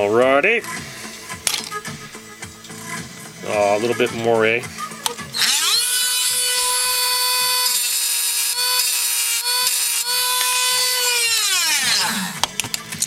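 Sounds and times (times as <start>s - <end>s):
rotary tool grinding metal: 5.3s - 13.0s.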